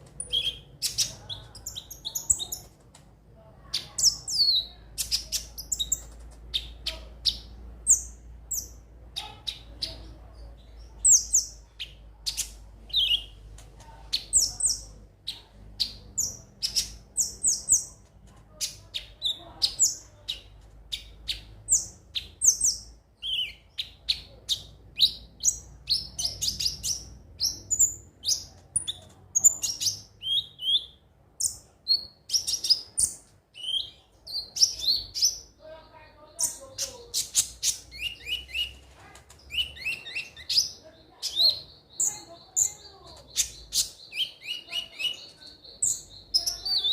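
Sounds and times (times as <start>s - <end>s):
sunbird chirping: 14.1s - 38.8s, 39.5s - 46.9s.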